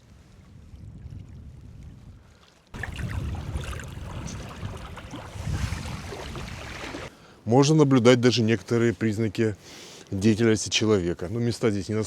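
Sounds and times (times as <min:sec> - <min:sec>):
wind buffeting microphone: 0:00.0 - 0:07.1.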